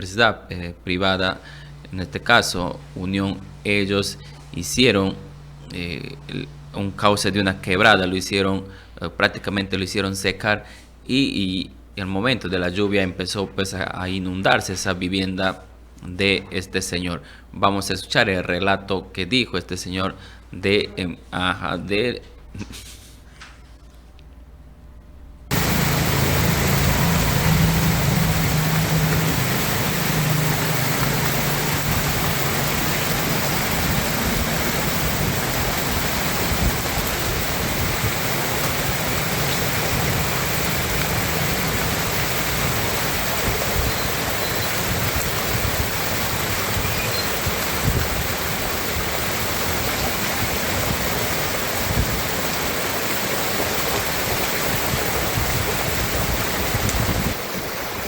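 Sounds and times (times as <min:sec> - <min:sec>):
low hum: 0:00.8 - 0:08.1, 0:25.5 - 0:56.6
torrential rain and rushing water: 0:25.5 - 0:58.0.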